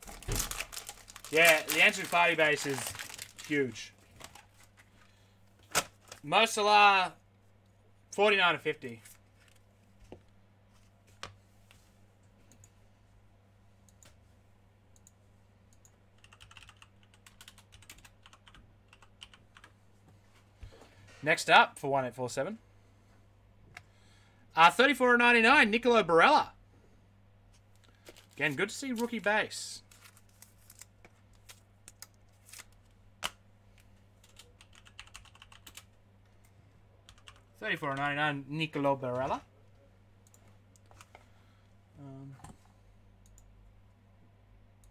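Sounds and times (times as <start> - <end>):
low electrical hum: 0.0 - 44.9
keyboard typing: 15.7 - 19.7, 34.2 - 35.9, 37.1 - 37.4.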